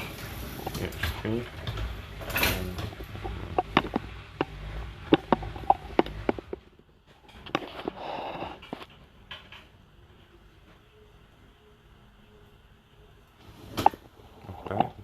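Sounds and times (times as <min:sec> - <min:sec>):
faint steady hum: 0:00.0 - 0:15.0
sharp clicks and knocks: 0:00.6 - 0:08.0.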